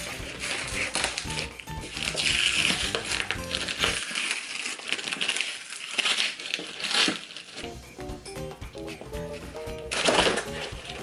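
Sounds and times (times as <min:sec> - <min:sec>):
background music: 0:00.0 - 0:04.0, 0:07.6 - 0:11.0
package wrapping tearing and crinkling: 0:00.0 - 0:07.6, 0:09.9 - 0:11.0.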